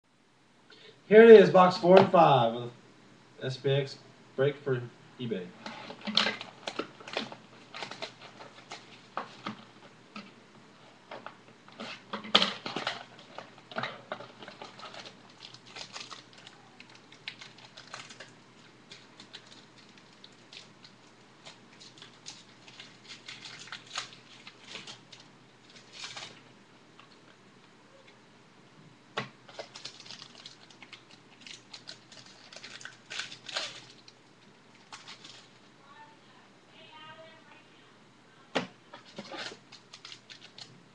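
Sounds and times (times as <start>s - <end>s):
card packs crinkling: 5.3s - 9.8s, 11.2s - 26.4s, 29.5s - 35.6s, 39.0s - 40.8s.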